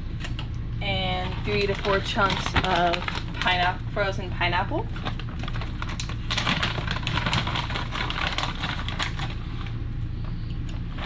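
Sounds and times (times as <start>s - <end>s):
steady low hum: 0.0s - 11.0s
frozen fruit clattering into blender: 5.0s - 9.4s.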